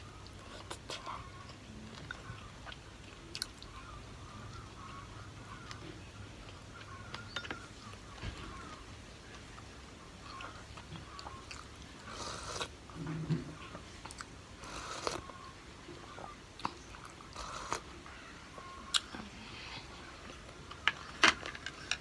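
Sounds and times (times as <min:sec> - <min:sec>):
person chewing: 0:00.3 - 0:03.8, 0:10.3 - 0:12.7, 0:14.0 - 0:15.4, 0:16.6 - 0:17.9.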